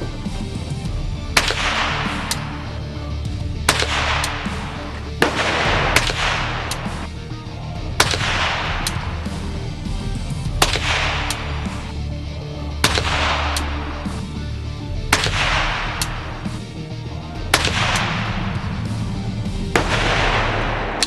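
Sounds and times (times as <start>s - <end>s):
gunshots: 0.0s - 21.0s
faint sharp cracks: 1.3s - 2.7s, 3.7s - 7.1s, 8.0s - 9.4s, 10.6s - 12.0s, 12.8s - 14.3s, 15.1s - 16.7s, 17.6s - 19.0s.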